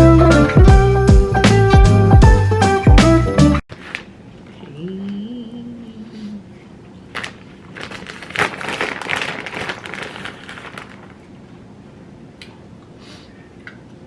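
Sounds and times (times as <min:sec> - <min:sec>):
crinkling and rustling: 0:07.1 - 0:11.2.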